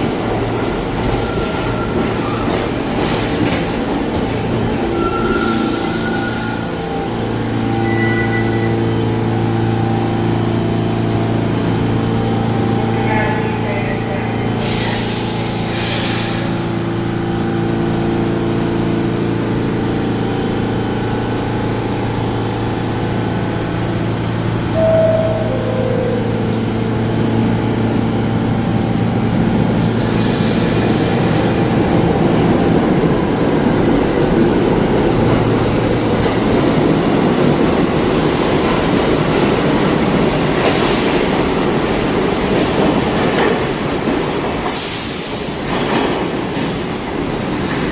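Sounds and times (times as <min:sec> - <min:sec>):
subway train motors humming: 0:00.0 - 0:47.9
train rumble and wheel noise: 0:00.0 - 0:47.9
two-note falling door chime: 0:24.7 - 0:26.8.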